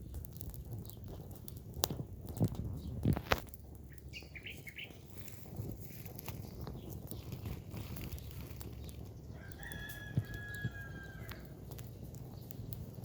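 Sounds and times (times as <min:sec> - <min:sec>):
wood fire crackling and popping: 0:00.0 - 0:13.0
rooster crowing: 0:09.3 - 0:11.5.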